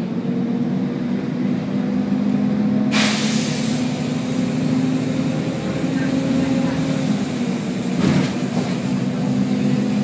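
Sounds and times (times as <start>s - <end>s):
bus diesel engine running: 0.0s - 10.0s
compressed air hiss: 2.9s - 4.4s.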